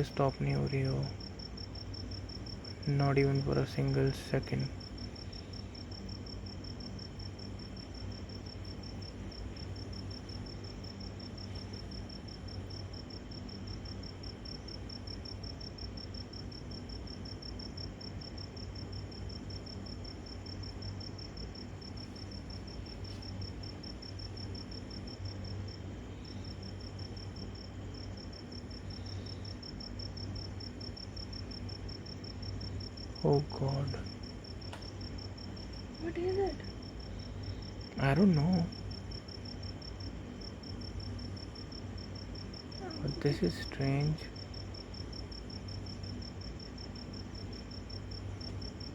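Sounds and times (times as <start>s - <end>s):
crickets chirping: 0.0s - 48.9s
low steady hum: 0.0s - 48.9s.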